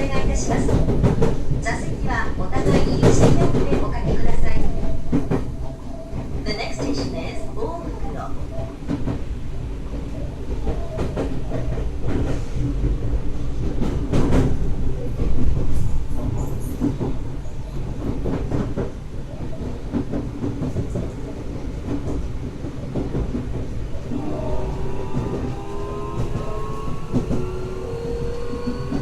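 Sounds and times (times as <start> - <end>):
rail joint clicks: 0.0 - 29.0
wheels rumbling on rail: 0.0 - 29.0
rising motor whine: 23.9 - 29.0.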